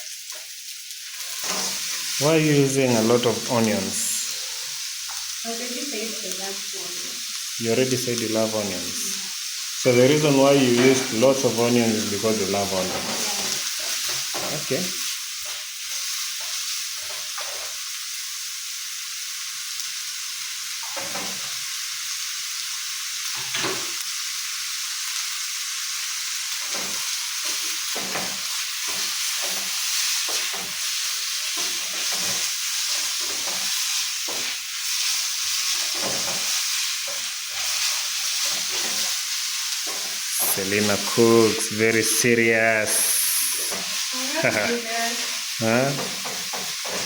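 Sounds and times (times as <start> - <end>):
onions sizzling in oil: 0.0 - 47.0
stirring scrapes and knocks: 35.5 - 39.2.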